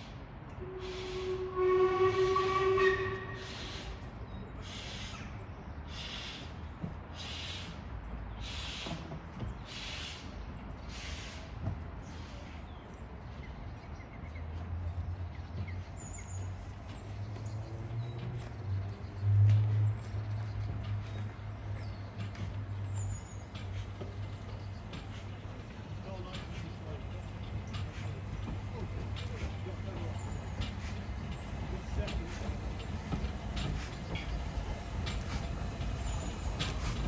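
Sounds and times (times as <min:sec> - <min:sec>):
steam locomotive whistle: 0:00.6 - 0:03.9
steam locomotive exhaust chuffs: 0:00.6 - 0:04.1, 0:16.4 - 0:37.0.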